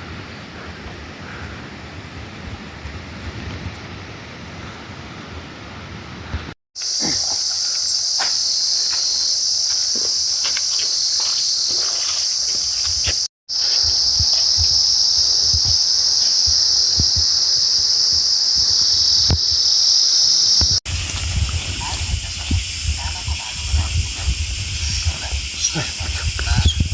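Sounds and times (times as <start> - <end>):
higher pulsing insect note: 6.8 - 26.9
insects droning: 6.8 - 26.9.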